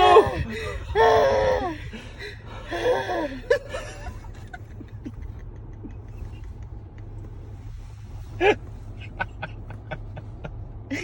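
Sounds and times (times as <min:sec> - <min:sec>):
car cabin rumble: 0:00.0 - 0:11.0.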